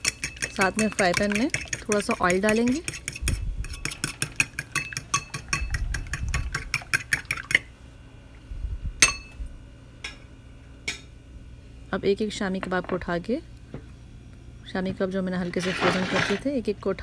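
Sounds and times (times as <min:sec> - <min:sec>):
fork clinking in bowl: 0:00.0 - 0:07.6, 0:09.0 - 0:09.4.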